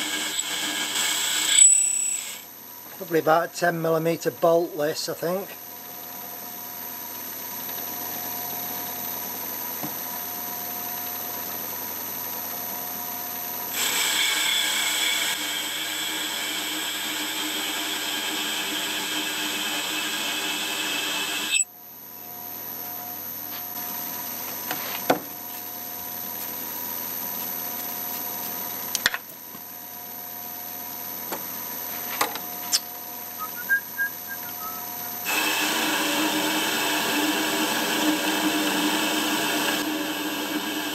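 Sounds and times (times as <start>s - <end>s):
cutting tool hissing on steel: 0.0s - 2.5s, 13.7s - 21.6s
metal lathe whining: 0.0s - 2.5s, 13.7s - 21.6s, 35.2s - 40.9s.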